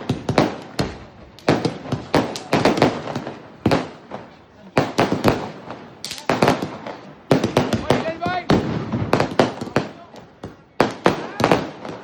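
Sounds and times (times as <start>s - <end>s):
firecrackers banging: 0.0s - 12.0s.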